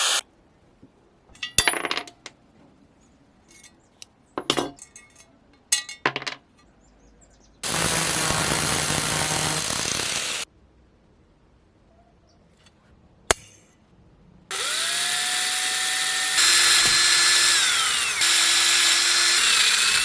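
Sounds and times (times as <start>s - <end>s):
loud steady hiss: 0.0s - 0.2s, 7.6s - 10.5s
metal tools clinking: 4.5s - 6.4s.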